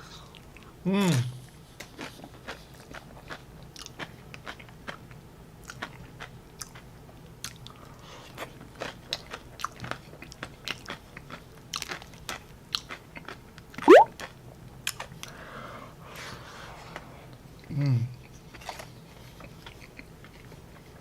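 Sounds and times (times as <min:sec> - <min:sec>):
person chewing crunchy chips: 0:02.0 - 0:05.0, 0:08.6 - 0:13.4.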